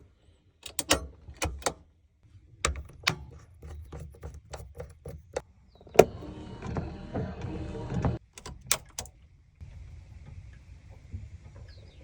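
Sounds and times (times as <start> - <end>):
sharp mechanical clicks and knocks: 0.6 - 1.8, 2.6 - 6.2, 8.2 - 9.1.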